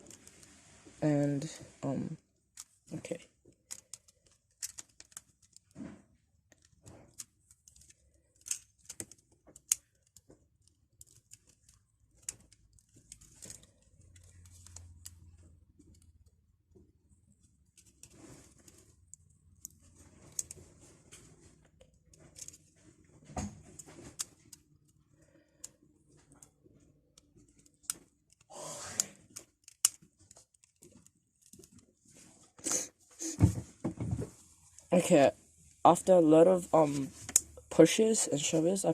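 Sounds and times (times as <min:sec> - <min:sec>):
plastic phone parts clicking: 0:02.5 - 0:05.8, 0:06.4 - 0:16.4, 0:17.6 - 0:20.6, 0:21.6 - 0:22.7, 0:23.7 - 0:28.5, 0:29.3 - 0:31.8.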